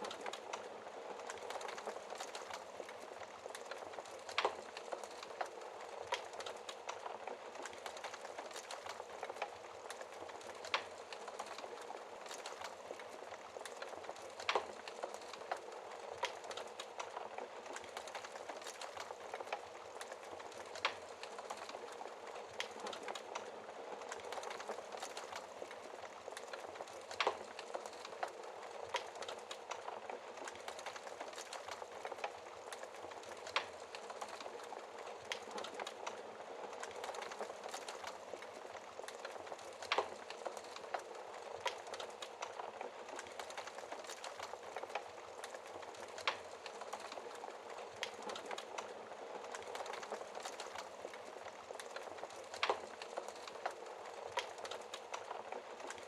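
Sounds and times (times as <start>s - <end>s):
fire popping: 0.0s - 56.0s
wood fire crackling: 0.0s - 56.0s.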